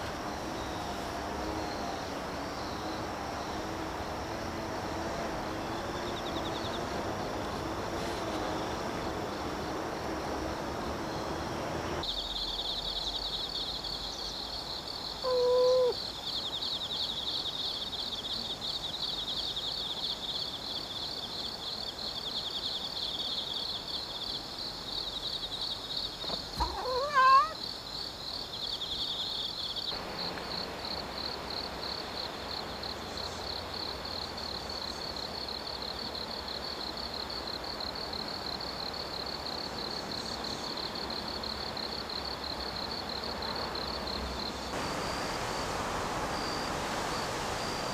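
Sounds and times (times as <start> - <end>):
insects trilling: 0.0 - 47.9
cat meowing: 15.2 - 16.0, 26.6 - 27.6.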